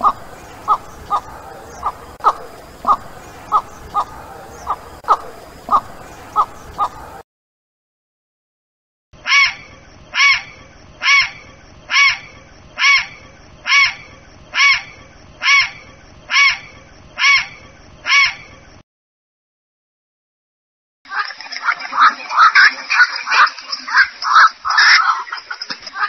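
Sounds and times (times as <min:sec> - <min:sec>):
water bird calling: 0:00.0 - 0:07.2, 0:21.1 - 0:26.0.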